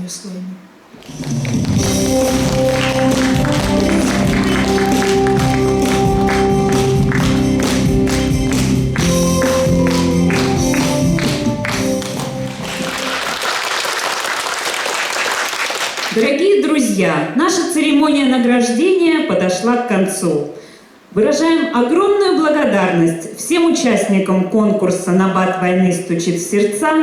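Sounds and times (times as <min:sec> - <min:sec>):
music with steady beat: 0:01.0 - 0:13.2
applause: 0:01.0 - 0:16.3.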